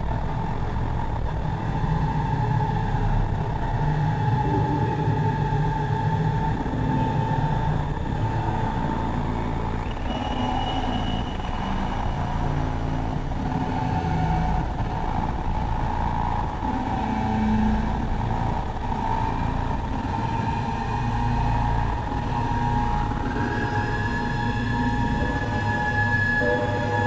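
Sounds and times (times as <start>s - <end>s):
low synthesizer drone: 0.0s - 27.0s
steady higher synth tone: 20.3s - 27.0s.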